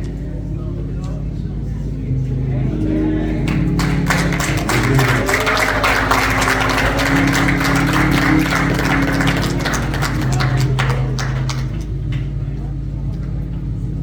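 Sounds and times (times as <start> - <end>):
church organ chords: 0.0 - 14.0
murmur of voices: 0.0 - 14.0
people shuffling and tapping: 2.8 - 13.6.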